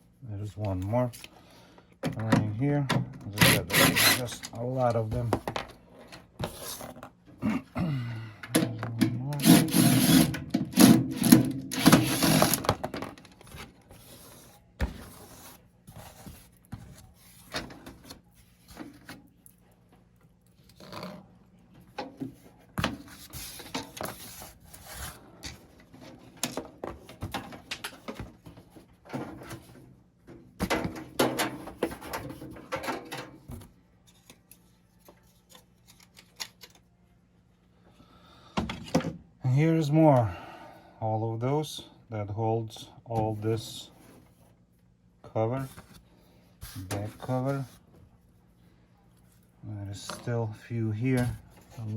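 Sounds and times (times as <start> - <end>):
screwdriver clicks and scrapes: 3.4 - 4.5.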